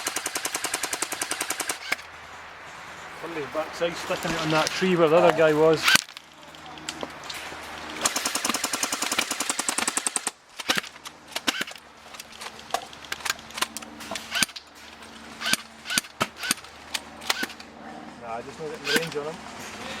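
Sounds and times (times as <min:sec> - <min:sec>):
airsoft rifle firing: 0:00.0 - 0:02.1, 0:08.0 - 0:11.9, 0:15.4 - 0:17.7.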